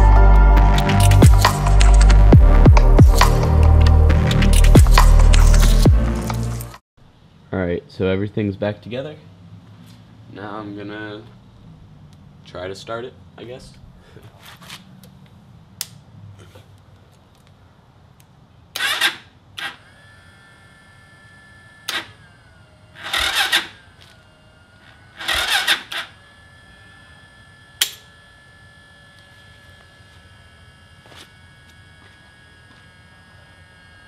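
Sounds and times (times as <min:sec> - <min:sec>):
electric starter cranking engine: 0:18.7 - 0:34.0
faint steady high whine: 0:19.5 - 0:34.0.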